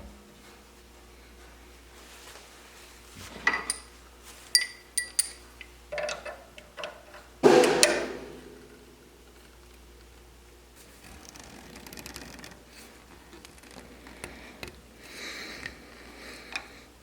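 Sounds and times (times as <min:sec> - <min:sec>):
small metal objects clinking: 0:04.6 - 0:05.4.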